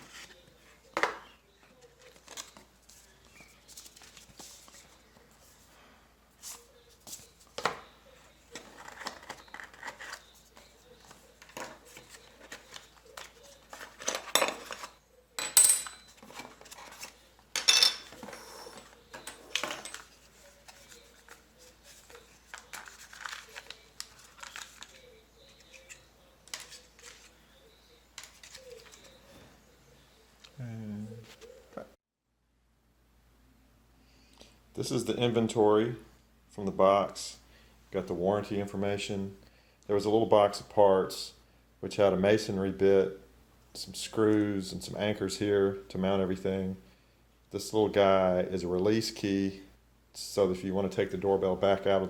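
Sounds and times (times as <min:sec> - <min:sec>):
small hard parts clinking: 0:15.4 - 0:16.2.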